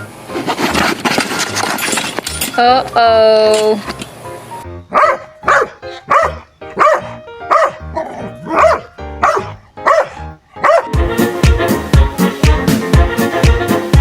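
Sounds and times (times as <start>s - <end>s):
soft background music: 0.0s - 14.0s
dog barking: 4.9s - 11.0s
upbeat music with drum beat: 10.9s - 14.0s.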